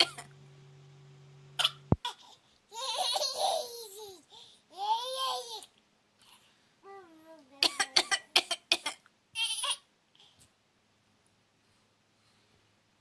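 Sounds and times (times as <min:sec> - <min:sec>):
steady low hum: 0:00.0 - 0:02.6
toddler laughing and babbling: 0:02.0 - 0:08.0, 0:09.4 - 0:09.9.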